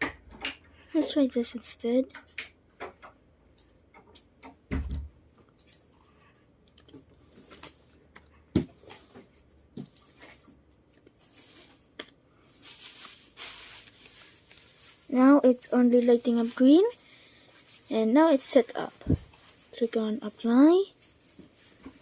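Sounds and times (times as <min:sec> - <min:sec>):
mouse and keyboard clicks: 0:06.6 - 0:08.3.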